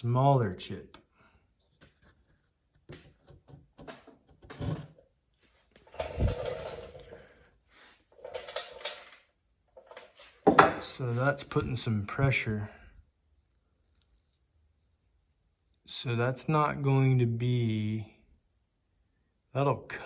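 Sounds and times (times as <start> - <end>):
saw chain scraping wood: 5.9 - 7.3.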